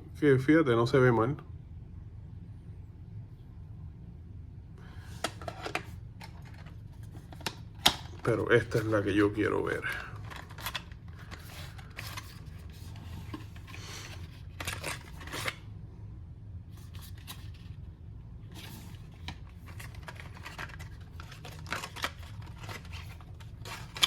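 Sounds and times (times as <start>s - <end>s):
packaging rustling and scraping: 5.0s - 15.7s, 16.7s - 24.0s.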